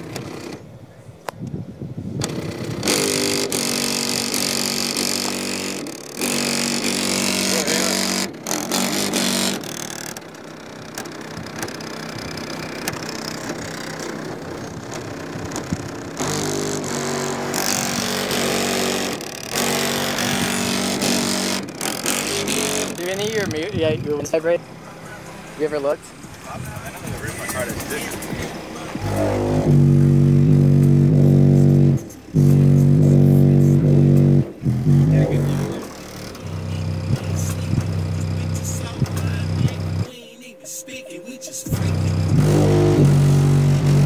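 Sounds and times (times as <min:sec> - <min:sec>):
bass-heavy music through subwoofer: 0:26.6 - 0:40.1, 0:41.7 - 0:44.0.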